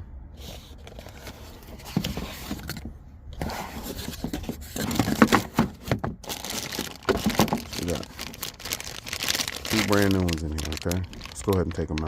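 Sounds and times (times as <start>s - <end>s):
packaging crinkling and scraping: 0.4s - 12.0s
packaging clicks: 6.2s - 12.0s.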